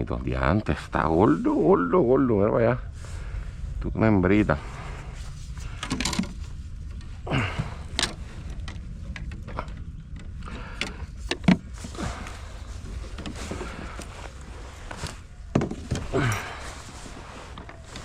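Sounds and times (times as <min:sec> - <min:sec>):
steady low rumble: 0:00.0 - 0:18.0
handling clicks and knocks: 0:05.8 - 0:06.4, 0:07.9 - 0:16.9.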